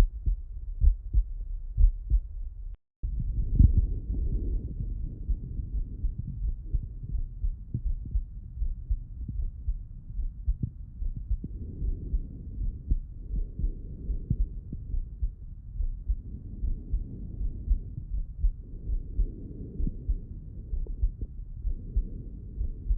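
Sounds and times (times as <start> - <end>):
heartbeat thuds: 0.0 - 22.9.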